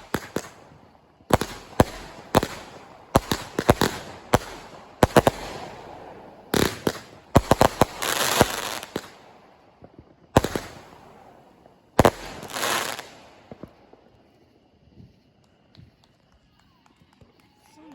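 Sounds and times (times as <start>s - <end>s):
firework shells bursting: 0.0s - 14.0s
firework crackling: 0.0s - 16.3s.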